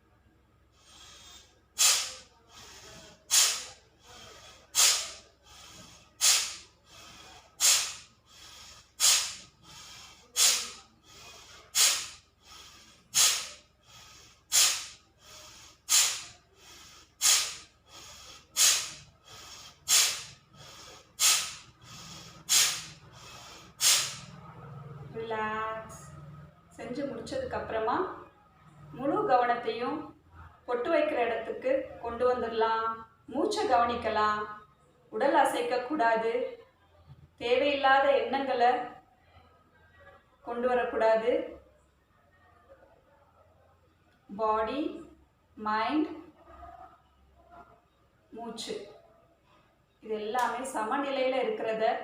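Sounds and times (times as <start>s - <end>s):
sharp hissing breaths through nose: 0.7s - 24.5s
soft breath in: 0.7s - 24.6s.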